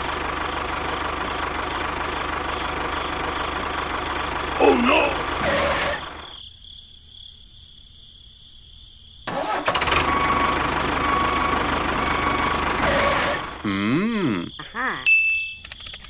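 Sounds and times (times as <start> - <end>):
model tractor motor whining: 0.1 - 6.3, 9.3 - 13.7.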